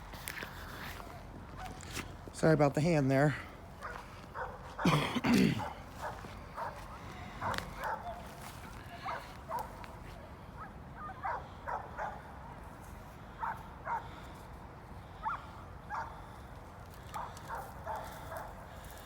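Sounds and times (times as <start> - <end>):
dogs barking and yipping: 0.4 - 2.0, 3.7 - 10.0, 10.6 - 12.6, 13.3 - 14.2, 15.2 - 16.3, 17.0 - 18.8.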